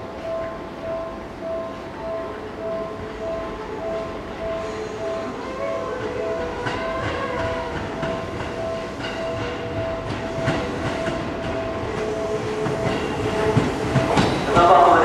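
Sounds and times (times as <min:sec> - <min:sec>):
electronic warning tone beeping: 0:00.2 - 0:14.8
train wheels clicking over joints: 0:04.7 - 0:15.0.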